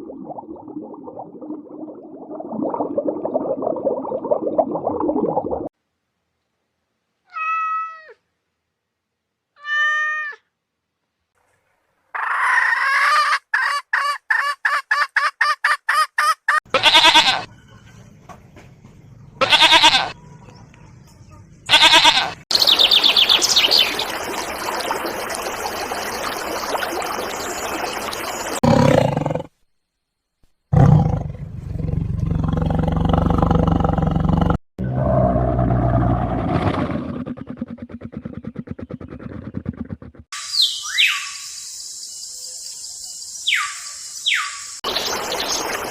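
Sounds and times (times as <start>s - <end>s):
short pitched animal cries: 7.3s - 8.2s, 9.6s - 10.5s
rough animal calls and roars: 30.7s - 40.3s.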